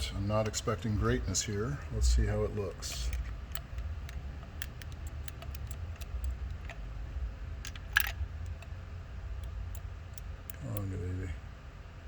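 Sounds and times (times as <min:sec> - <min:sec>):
socket wrench metallic clicks: 0:02.8 - 0:06.8, 0:07.6 - 0:08.8.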